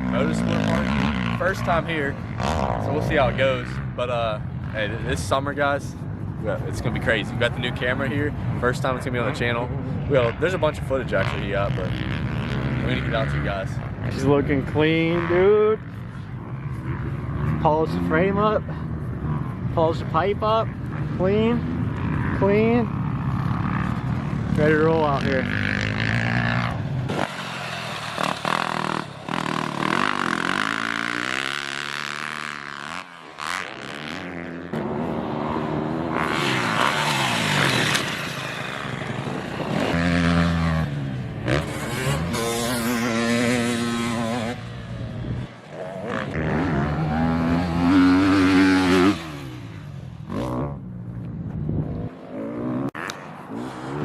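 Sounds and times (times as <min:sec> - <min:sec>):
dirt bike engine revving: 0:00.0 - 0:05.3, 0:10.0 - 0:54.0.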